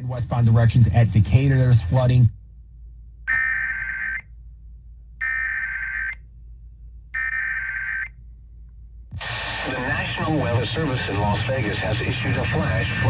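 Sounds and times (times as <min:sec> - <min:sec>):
faint low hum: 0:00.0 - 0:13.0
two-tone digital data bursts: 0:03.3 - 0:04.2, 0:05.2 - 0:06.2.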